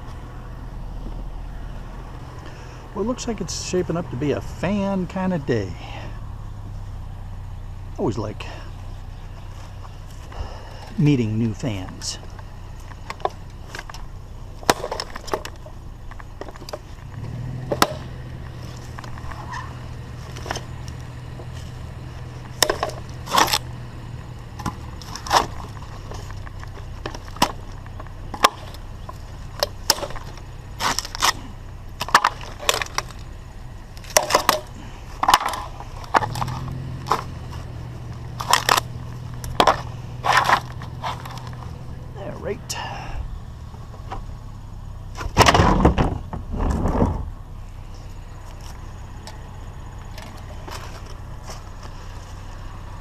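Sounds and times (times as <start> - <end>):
electric fans clattering: 10.1 - 43.0.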